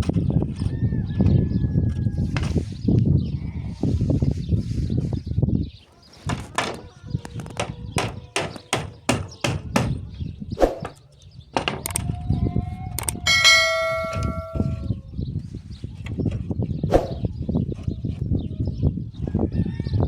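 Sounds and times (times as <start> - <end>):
loud metallic clang: 13.3 - 14.9
sharp knocks: 13.3 - 14.9.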